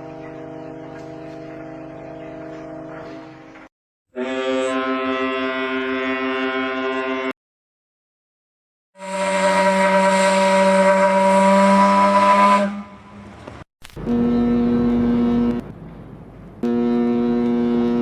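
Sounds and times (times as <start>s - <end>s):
ship's horn blasts: 0.0s - 7.4s, 9.0s - 15.7s, 16.6s - 18.0s
ship's steam whistle: 4.1s - 7.3s, 9.0s - 13.4s, 16.6s - 18.0s.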